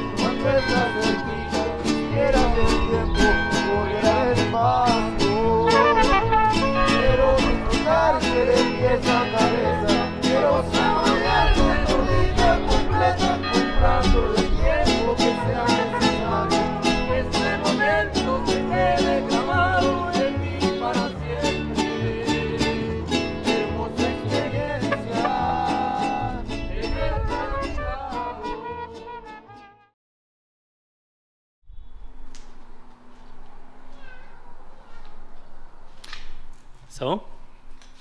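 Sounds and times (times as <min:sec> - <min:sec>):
country bluegrass music: 0:00.0 - 0:29.7.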